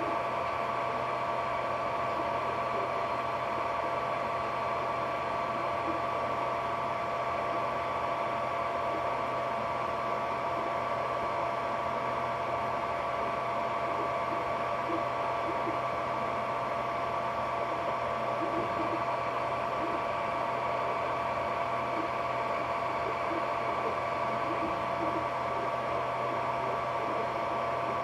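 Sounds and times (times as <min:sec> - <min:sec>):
printer whirring hum: 0:00.0 - 0:28.0.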